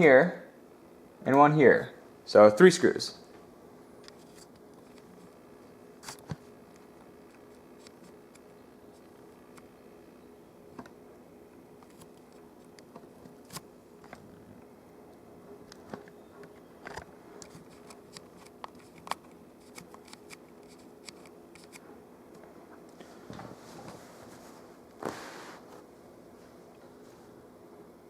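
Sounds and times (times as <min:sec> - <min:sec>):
faint steady hum: 0:00.0 - 0:28.0.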